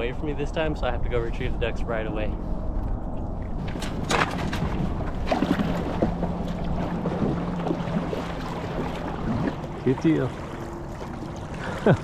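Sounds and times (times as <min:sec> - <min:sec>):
low hum: 0:00.0 - 0:12.0
wind rumbling on microphone: 0:00.0 - 0:12.0
water sloshing and splashing: 0:02.5 - 0:12.0.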